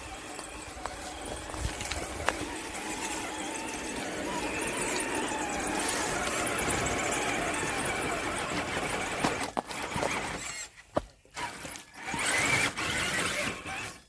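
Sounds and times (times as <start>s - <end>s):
electric motor and gears whining: 0.0s - 14.0s.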